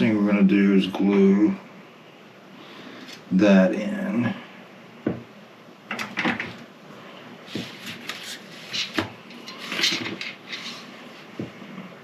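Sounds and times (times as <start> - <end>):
rustling and scraping: 7.4 - 12.0.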